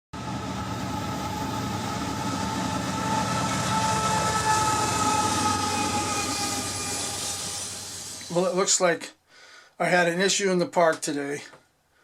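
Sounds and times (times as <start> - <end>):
train rumble: 0.2 - 8.8.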